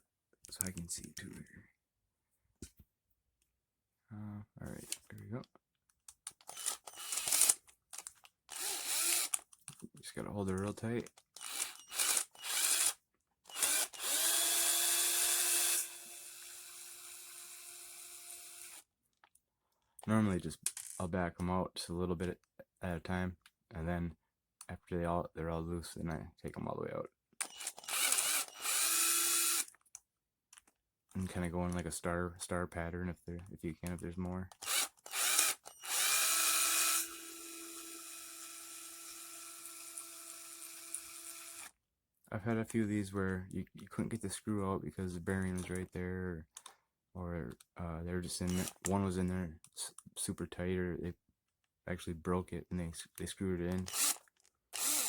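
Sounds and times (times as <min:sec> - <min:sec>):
electric screwdriver whine: 0:06.5 - 0:07.6, 0:08.5 - 0:09.4, 0:11.4 - 0:18.8, 0:27.4 - 0:29.7, 0:34.6 - 0:41.7, 0:48.5 - 0:48.8, 0:53.9 - 0:54.2, 0:54.8 - 0:55.0.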